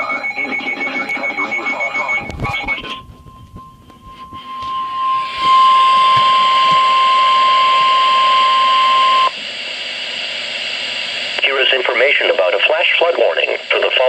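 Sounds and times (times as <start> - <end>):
radio static hiss: 0.0 - 3.2, 5.4 - 14.0
high alarm beep tone: 0.0 - 9.3.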